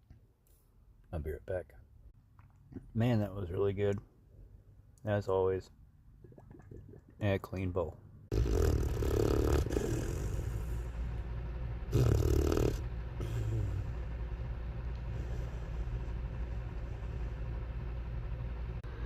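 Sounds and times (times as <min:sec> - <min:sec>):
steady low hum: 0:00.0 - 0:19.0
puppy snoring: 0:08.3 - 0:10.9, 0:11.8 - 0:14.0.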